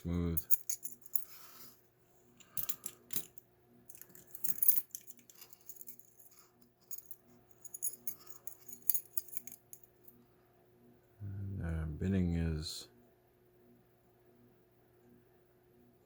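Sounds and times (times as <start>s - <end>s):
keys jingling: 0.0s - 1.4s, 2.4s - 10.0s.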